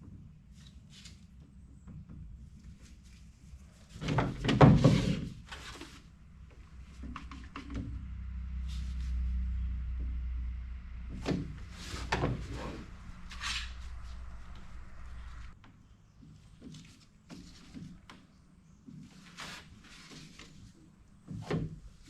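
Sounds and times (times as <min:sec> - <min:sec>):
low steady hum: 0:01.2 - 0:16.2
scraping and knocking: 0:03.9 - 0:06.0, 0:11.1 - 0:15.6.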